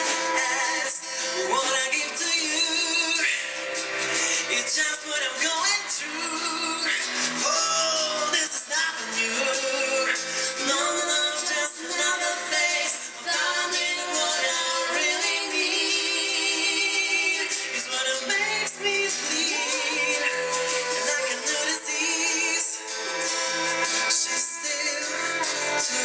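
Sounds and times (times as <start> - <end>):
woman and man singing duet: 0.0 - 26.0
instrumental accompaniment: 6.1 - 26.0.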